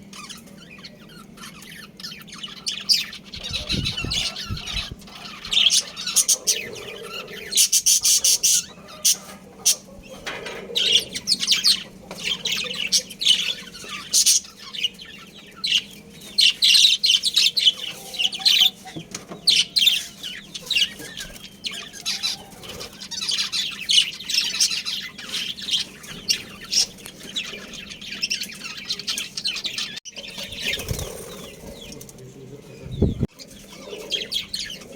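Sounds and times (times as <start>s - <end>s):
budgerigars chirping and chattering: 0.0s - 34.9s.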